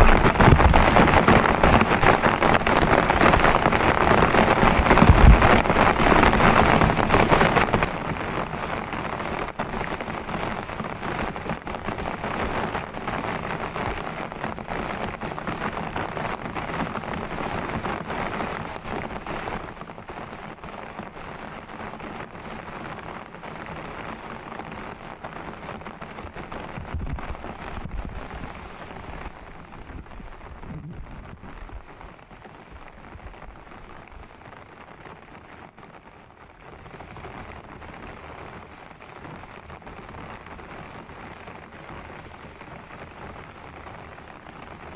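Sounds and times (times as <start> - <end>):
heavy rain falling: 0.0 - 44.9
low rumble: 29.8 - 31.9.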